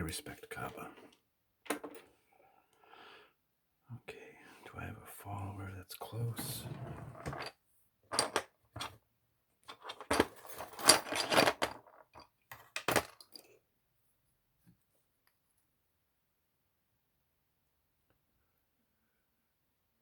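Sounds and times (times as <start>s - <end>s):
small metal parts clinking: 8.1s - 8.9s, 9.7s - 13.6s.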